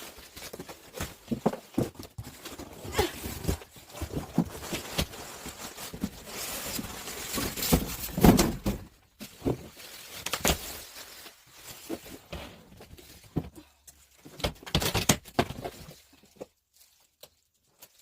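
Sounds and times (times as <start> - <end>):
rustling: 0.0 - 14.4.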